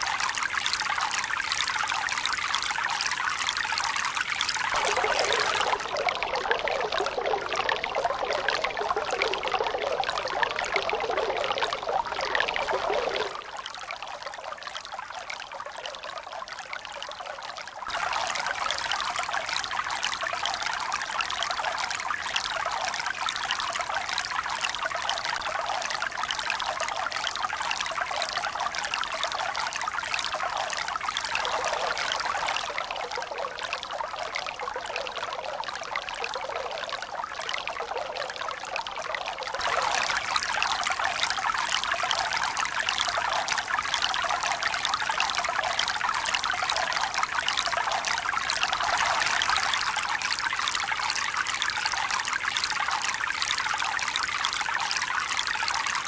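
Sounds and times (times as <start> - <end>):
running water splashing: 4.7 - 6.0.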